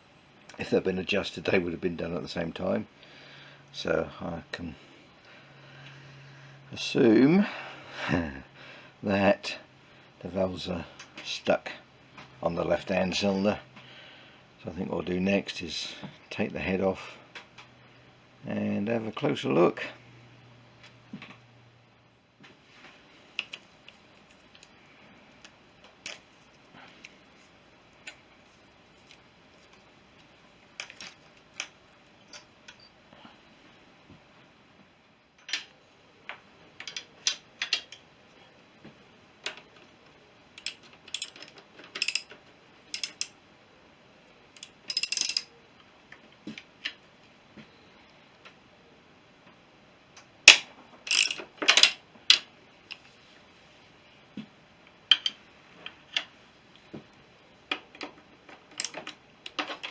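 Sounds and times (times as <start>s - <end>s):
ratchet clicking: 40.6s - 42.3s, 42.9s - 43.4s, 44.6s - 45.5s, 50.5s - 51.9s, 58.8s - 59.0s
metallic clicks and clinks: 40.6s - 43.4s, 44.6s - 45.5s, 50.5s - 52.5s, 58.8s - 59.9s.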